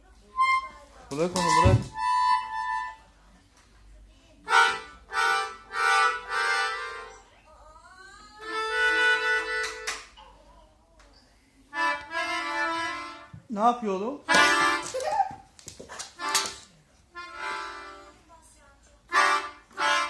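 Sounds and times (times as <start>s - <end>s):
harmonica chords: 0.4s - 0.8s, 1.4s - 3.0s, 4.4s - 7.2s, 8.4s - 9.9s, 11.7s - 13.3s, 14.2s - 14.9s, 17.1s - 18.2s, 19.1s - 20.0s.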